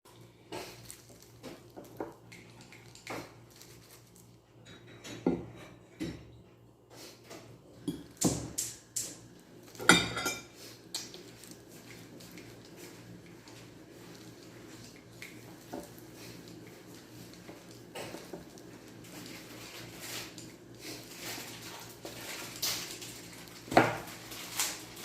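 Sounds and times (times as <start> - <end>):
dishes and utensils clattering: 4.6 - 6.3, 9.8 - 11.2.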